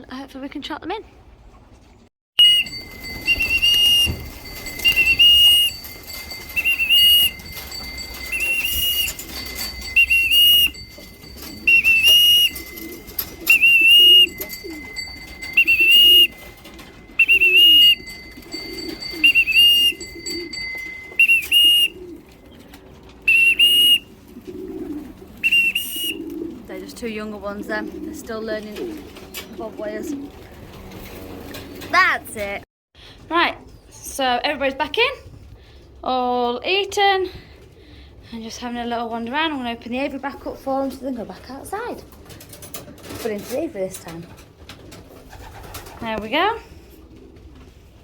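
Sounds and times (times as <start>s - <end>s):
whistle blasts: 2.4s - 5.8s, 6.6s - 7.4s, 8.3s - 9.2s, 10.0s - 10.9s, 11.6s - 12.6s, 15.5s - 16.4s, 17.2s - 18.0s, 19.2s - 20.0s, 21.1s - 22.0s, 23.3s - 24.1s, 25.4s - 26.2s
pigeons cooing: 2.8s - 31.9s, 44.3s - 46.0s, 46.6s - 48.0s.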